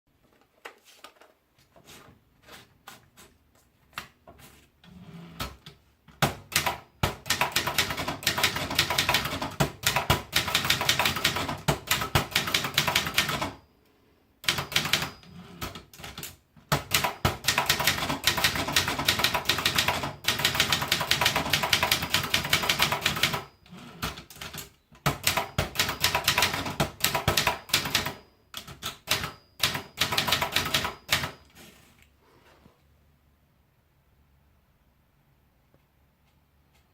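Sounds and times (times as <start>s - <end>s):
typewriter typing: 4.9s - 13.6s, 14.4s - 31.6s.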